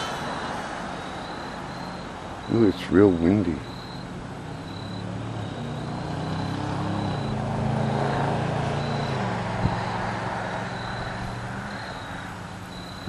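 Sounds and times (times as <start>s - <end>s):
wind noise: 7.0s - 13.0s.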